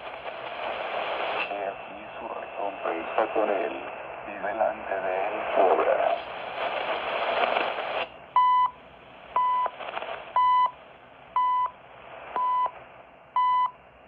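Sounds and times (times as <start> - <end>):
loud radio static: 0.0 - 8.1.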